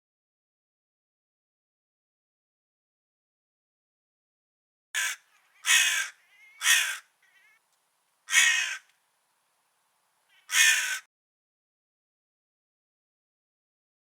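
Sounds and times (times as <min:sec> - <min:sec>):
crow cawing: 0:05.0 - 0:07.6, 0:08.3 - 0:08.9, 0:10.3 - 0:11.1
faint softer bird calls: 0:05.0 - 0:09.0, 0:10.2 - 0:11.1.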